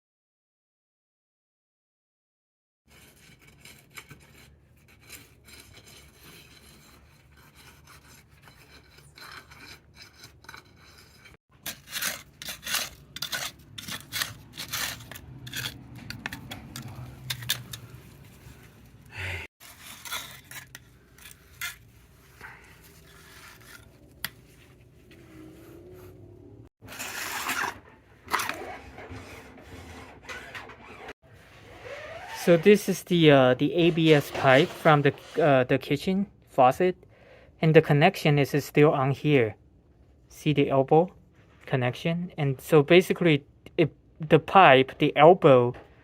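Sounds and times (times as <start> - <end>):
hand tools scraping and clinking: 2.9 - 26.2, 26.8 - 35.8.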